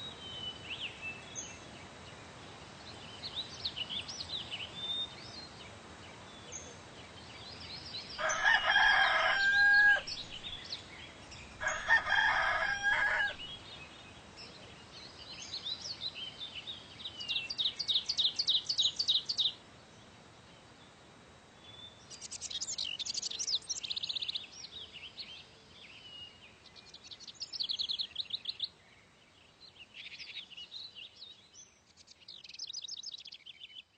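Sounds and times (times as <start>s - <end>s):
songbirds chirping: 0.0s - 33.9s
rooster crowing: 8.2s - 10.2s, 11.6s - 13.5s.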